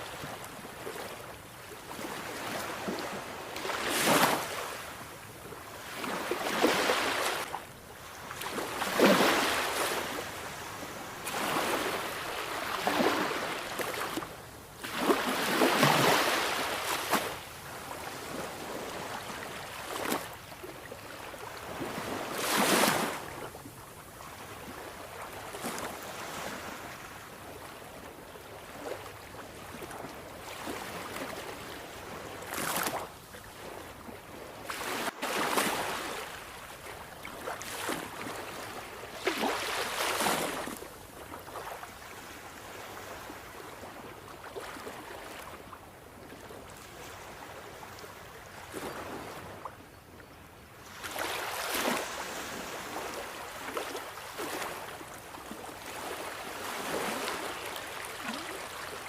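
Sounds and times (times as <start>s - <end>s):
sea waves crashing on shore: 5.8s - 20.4s, 21.2s - 23.4s, 34.6s - 36.6s, 50.8s - 59.0s.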